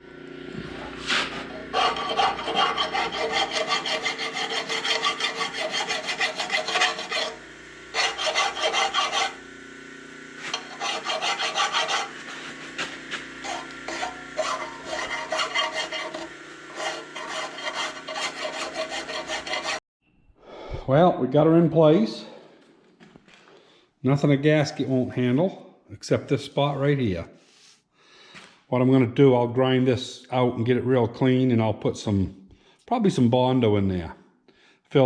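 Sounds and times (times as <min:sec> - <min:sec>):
steady low hum: 0:00.0 - 0:19.8
file rasping on steel: 0:01.0 - 0:09.4, 0:10.4 - 0:19.8.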